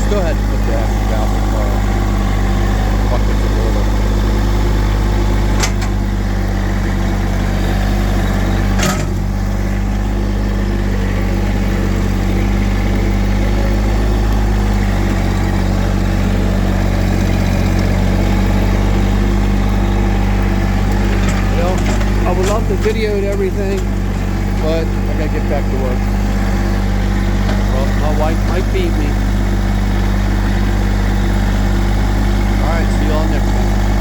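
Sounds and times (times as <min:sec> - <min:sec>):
tractor diesel engine running: 0:00.0 - 0:34.0.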